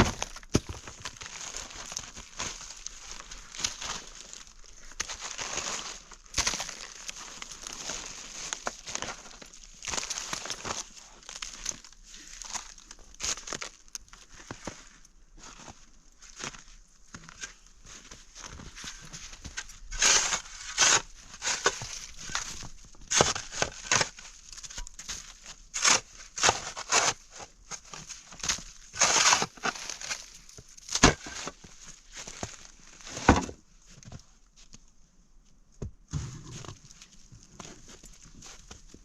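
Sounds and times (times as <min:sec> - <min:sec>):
footsteps crunching through snow: 0:00.0 - 0:23.3, 0:36.1 - 0:39.0.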